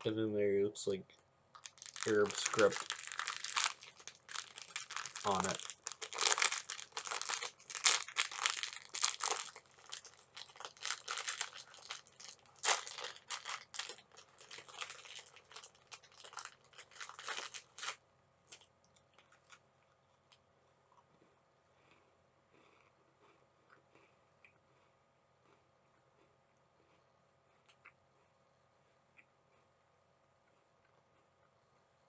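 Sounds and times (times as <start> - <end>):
plastic wrapper crinkling: 1.5 - 19.6.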